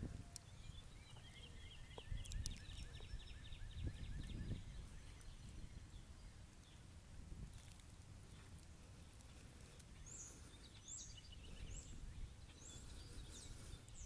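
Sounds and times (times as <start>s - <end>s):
wind buffeting microphone: 0.0s - 9.0s, 10.0s - 14.0s
songbird trilling: 0.2s - 6.8s, 10.0s - 14.0s.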